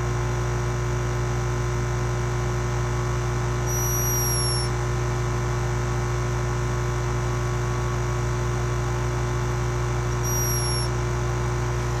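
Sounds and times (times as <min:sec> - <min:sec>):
low electrical hum: 0:00.0 - 0:12.0
high-pitched snoring whistle: 0:03.7 - 0:04.7, 0:10.2 - 0:11.0.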